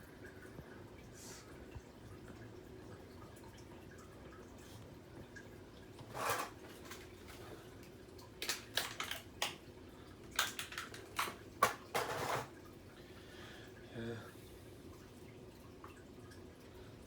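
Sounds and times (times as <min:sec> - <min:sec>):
short plastic scrape: 0:06.1 - 0:06.6
plastic toy pieces clicking: 0:08.4 - 0:09.6, 0:10.4 - 0:11.4.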